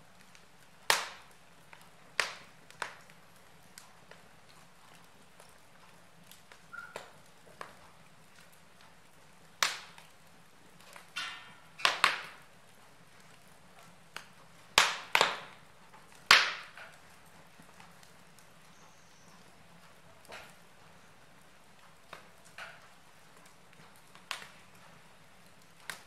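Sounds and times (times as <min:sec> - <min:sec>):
sharp knocks or cracks: 0:11.1 - 0:12.4, 0:16.3 - 0:16.8.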